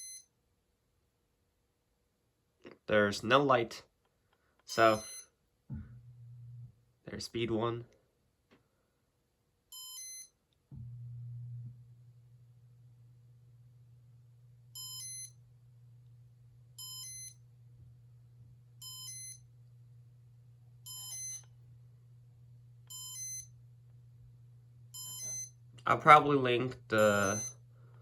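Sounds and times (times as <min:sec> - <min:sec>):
ceiling fan motor hum: 0:10.7 - 0:28.0
electronic beeps: 0:14.8 - 0:15.4, 0:16.8 - 0:17.4, 0:18.8 - 0:19.4, 0:20.9 - 0:21.5, 0:22.9 - 0:23.5, 0:25.0 - 0:25.6, 0:27.0 - 0:27.6.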